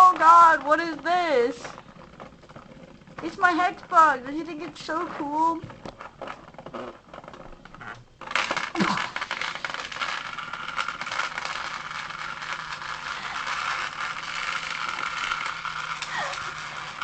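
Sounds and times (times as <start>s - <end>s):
vibrating toy bug buzzing: 8.3s - 17.0s.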